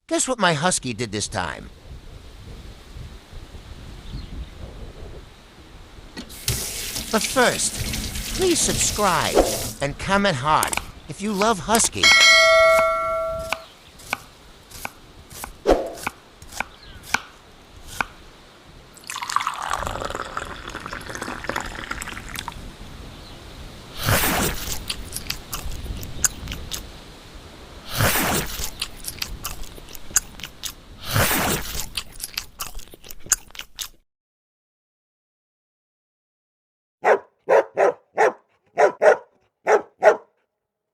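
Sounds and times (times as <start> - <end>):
drips: 6.3 - 9.8, 19.0 - 22.6
loud hissing bursts: 6.3 - 9.9, 23.9 - 24.8, 27.8 - 28.8.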